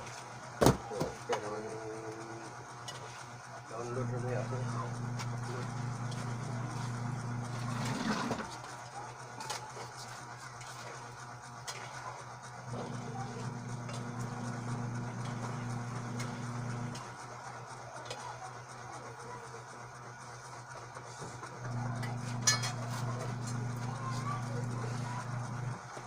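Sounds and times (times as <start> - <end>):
low machine hum: 3.7 - 9.1, 12.0 - 20.5, 21.2 - 26.0.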